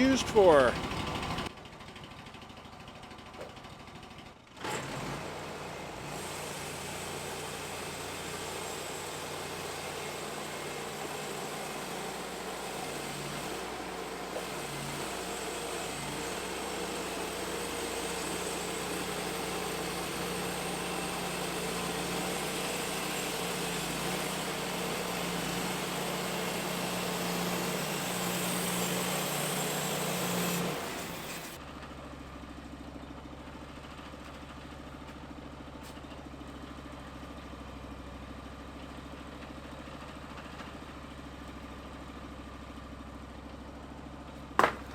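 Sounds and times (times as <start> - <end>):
sawmill engine running: 0.0 - 44.9
band blade cutting log: 8.6 - 31.6, 44.6 - 44.9.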